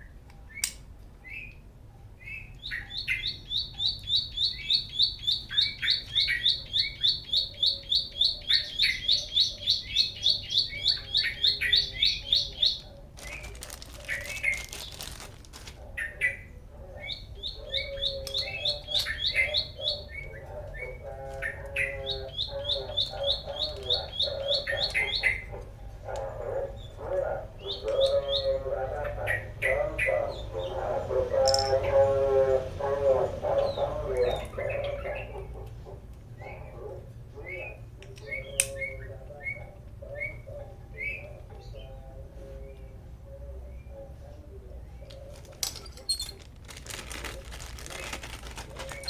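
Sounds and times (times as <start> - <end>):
lower repeated bird calls: 0.0 - 15.1, 15.8 - 46.4, 47.9 - 49.0
bird chirping rapidly: 2.2 - 15.0, 16.0 - 26.0, 26.6 - 32.2.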